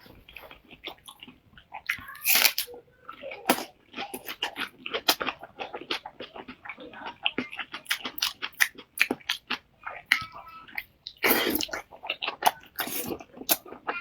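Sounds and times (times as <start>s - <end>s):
person biting and chewing: 0.3s - 2.7s, 3.4s - 6.6s, 11.2s - 13.9s.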